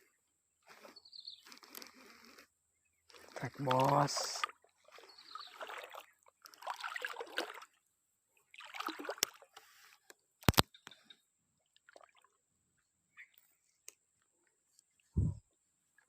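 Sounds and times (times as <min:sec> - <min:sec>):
water sloshing and splashing: 0:03.1 - 0:10.6, 0:11.6 - 0:12.5.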